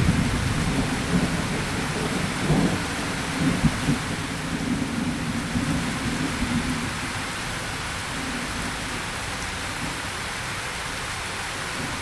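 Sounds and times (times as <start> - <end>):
rolling thunder: 0.0 - 6.8
steady rain: 0.0 - 12.0.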